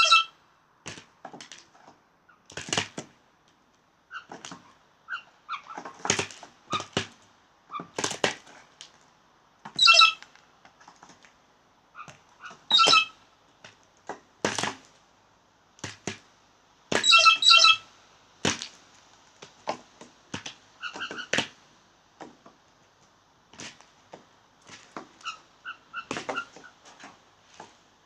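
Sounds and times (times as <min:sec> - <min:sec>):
blue jays calling: 0:09.8 - 0:10.2, 0:12.0 - 0:13.2, 0:17.0 - 0:17.8.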